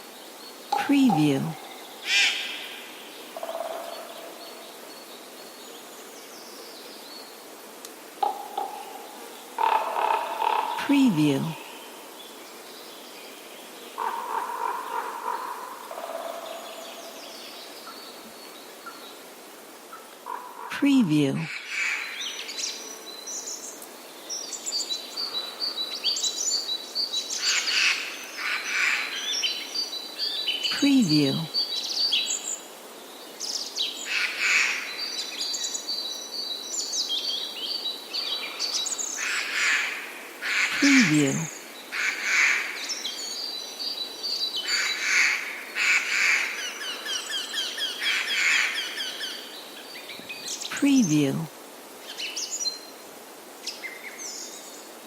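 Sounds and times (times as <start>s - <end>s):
songbird chirping: 0.0s - 55.0s
birds chirping: 40.5s - 42.0s.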